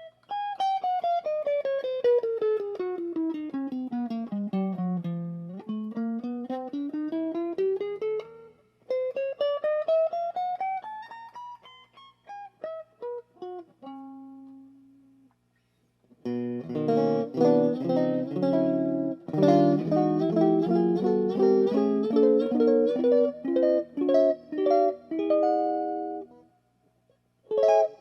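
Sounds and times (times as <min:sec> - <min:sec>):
electric guitar chords strummed: 0:16.2 - 0:26.4.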